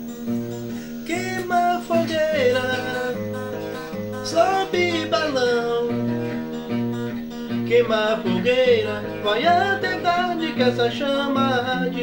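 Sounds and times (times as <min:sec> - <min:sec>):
acoustic guitar: 0:00.0 - 0:12.0
sliding lead melody: 0:00.0 - 0:12.0.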